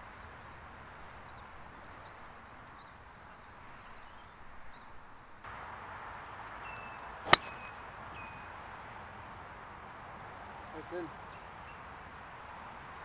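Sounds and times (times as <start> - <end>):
faint outdoor background noise: 0.0 - 13.0
golf club striking ball: 7.3 - 7.6.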